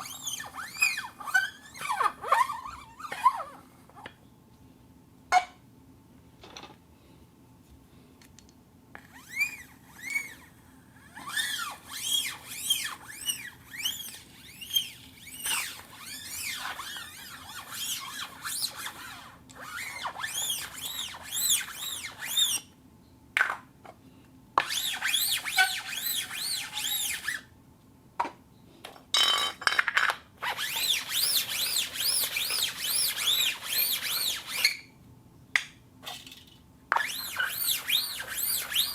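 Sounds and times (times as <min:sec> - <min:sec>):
plastic cup squeaking on turntable: 0:00.0 - 0:03.6, 0:09.0 - 0:22.7, 0:24.6 - 0:27.4, 0:30.4 - 0:34.9, 0:36.0 - 0:38.9.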